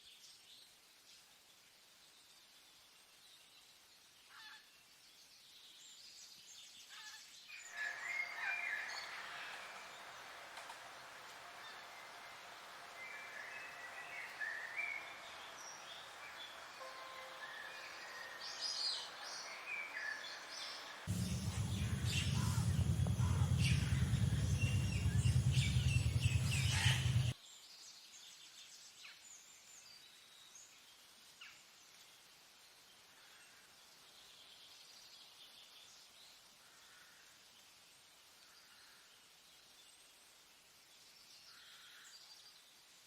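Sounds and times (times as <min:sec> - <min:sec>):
birds calling and chirping: 0:21.0 - 0:27.4
loud low rumble: 0:21.1 - 0:27.4.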